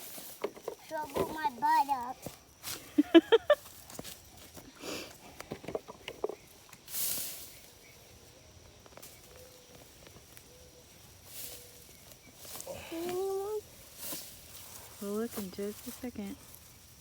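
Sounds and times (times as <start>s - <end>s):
hissing scrape of dirt: 0.0s - 0.5s, 6.7s - 8.0s, 11.2s - 12.8s, 13.8s - 15.2s
hand scraping soil: 0.0s - 2.8s, 8.8s - 17.0s.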